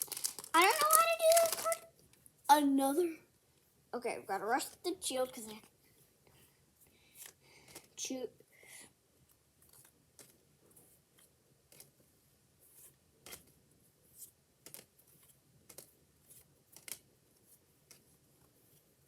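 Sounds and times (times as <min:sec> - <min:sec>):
trading cards clicking and snapping: 0:00.0 - 0:01.8, 0:14.6 - 0:14.9, 0:15.6 - 0:15.9, 0:16.7 - 0:17.0.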